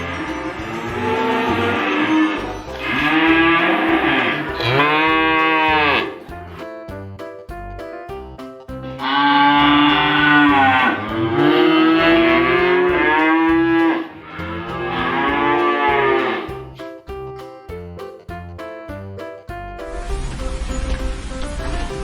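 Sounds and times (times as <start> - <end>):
light background music: 0.0 - 22.0
cow mooing: 0.8 - 6.2, 9.0 - 16.5.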